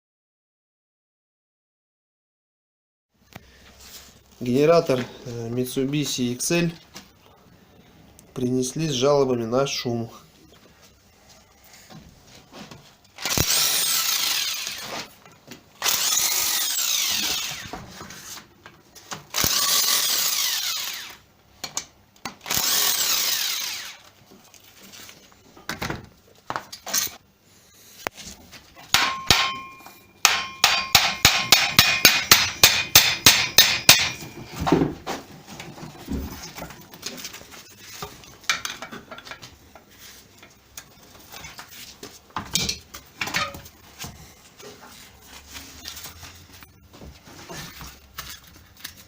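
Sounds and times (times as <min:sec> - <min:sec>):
power tool winding down: 0:13.2 - 0:15.0, 0:15.8 - 0:17.7, 0:19.3 - 0:21.2, 0:22.5 - 0:24.0.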